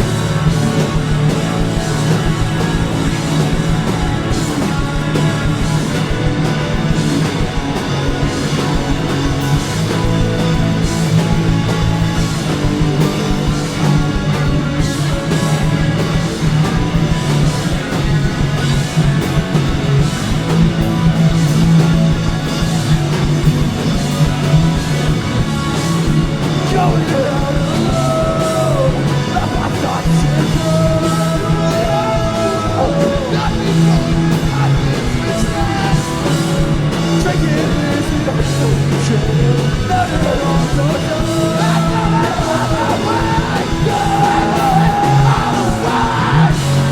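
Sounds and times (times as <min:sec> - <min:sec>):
live rock band playing: 0:00.0 - 0:46.9
person singing: 0:26.6 - 0:46.9.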